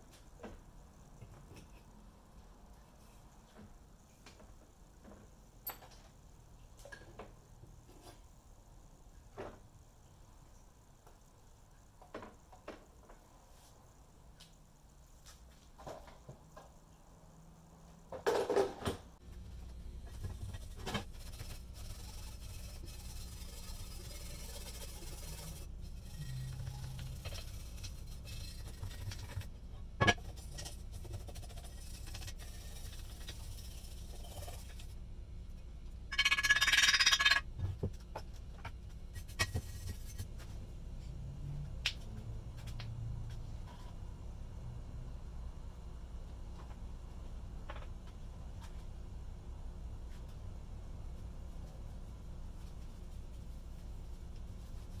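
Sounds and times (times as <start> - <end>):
low hum: 19.2 - 55.0
faint rubbing or scraping: 19.4 - 29.5, 30.2 - 35.0.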